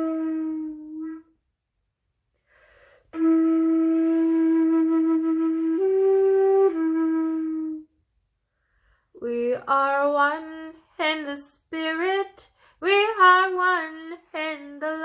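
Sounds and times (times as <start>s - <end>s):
flute playing slow hymn: 0.0s - 1.4s, 3.1s - 7.9s.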